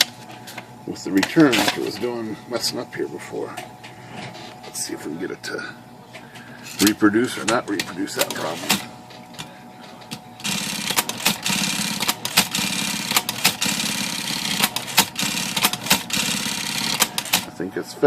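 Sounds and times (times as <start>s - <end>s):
electric typewriter motor humming: 1.0s - 2.2s, 6.6s - 17.7s
typewriter typing strikes: 6.8s - 8.9s, 10.4s - 17.5s.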